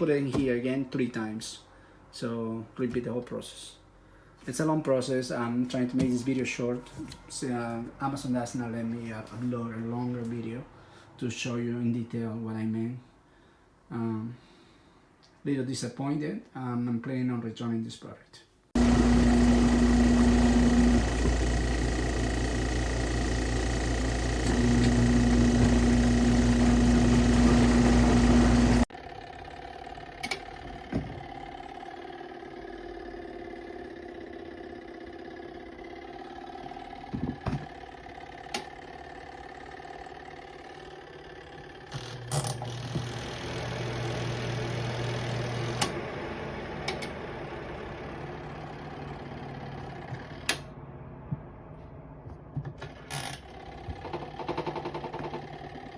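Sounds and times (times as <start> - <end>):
washing machine motor humming: 18.8 - 50.8, 52.3 - 55.9.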